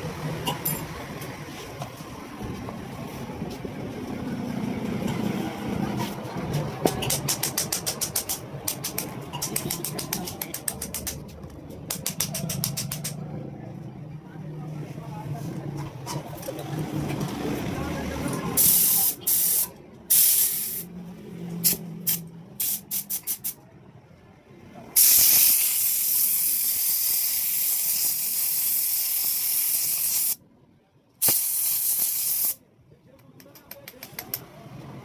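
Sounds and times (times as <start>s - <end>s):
pressurised spray hissing: 18.6s - 20.9s, 25.0s - 30.4s, 31.2s - 32.6s.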